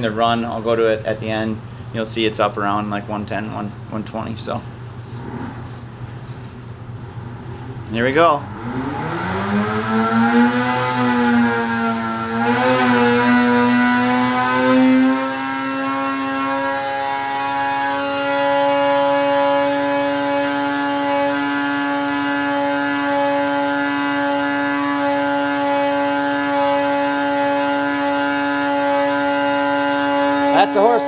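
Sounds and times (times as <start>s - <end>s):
snowmobile engine at full throttle: 30.5s - 31.0s.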